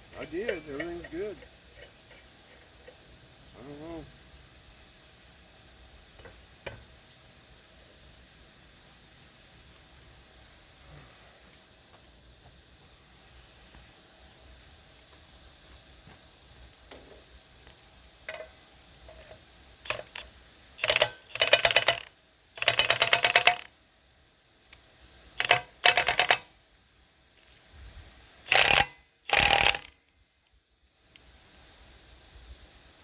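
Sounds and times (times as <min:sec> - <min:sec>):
ratchet wrench clicking: 0:19.1 - 0:23.7, 0:25.4 - 0:26.5, 0:28.5 - 0:30.0.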